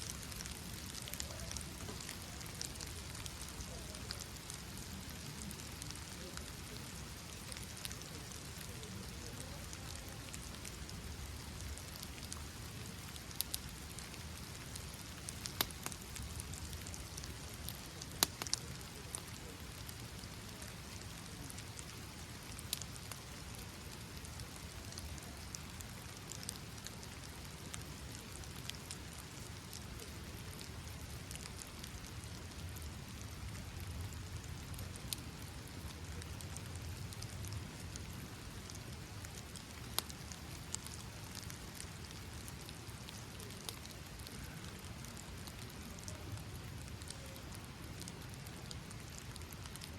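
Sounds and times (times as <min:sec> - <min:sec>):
rain falling: 0:00.0 - 0:49.9.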